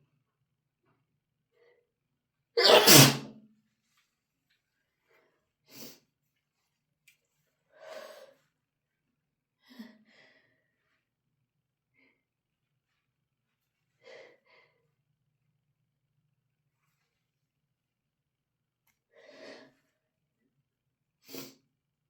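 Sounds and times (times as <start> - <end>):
person sneezing: 2.6 - 3.3
quiet breaths: 7.6 - 8.6.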